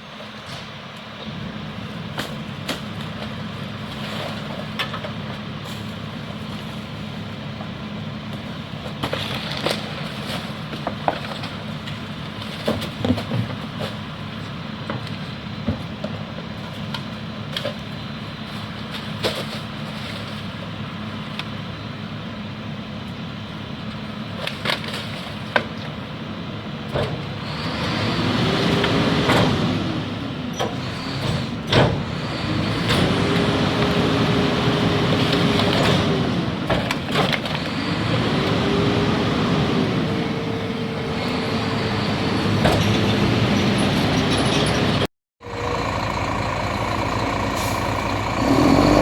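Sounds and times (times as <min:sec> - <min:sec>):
diesel engine idling and revving: 0:20.6 - 0:49.0.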